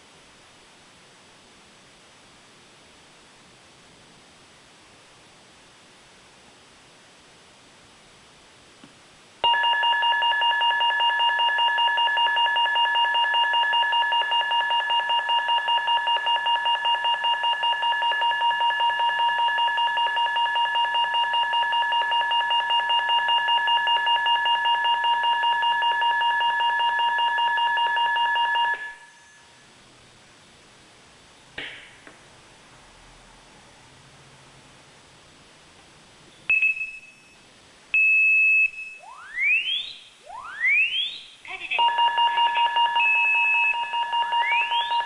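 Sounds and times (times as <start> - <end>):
fire alarm fluttering electronic tone: 9.4 - 29.6, 38.0 - 45.0.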